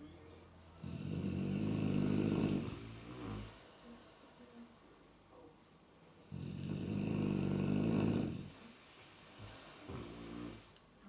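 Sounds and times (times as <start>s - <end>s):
soft breath: 0.5s - 5.0s, 8.3s - 10.8s
pet snoring: 0.8s - 3.7s, 6.2s - 10.8s.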